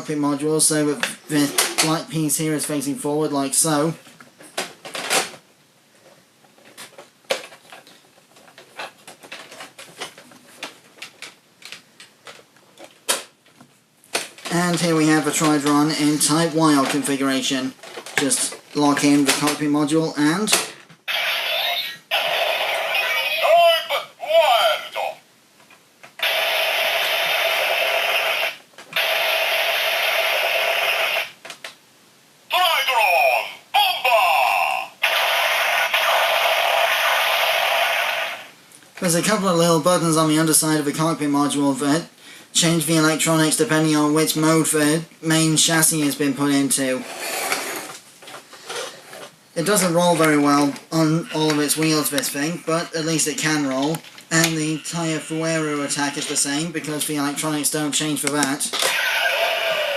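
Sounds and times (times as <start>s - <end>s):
toy electronic buzzy hissing tone: 26.2s - 31.4s, 35.0s - 38.5s, 58.9s - 59.9s.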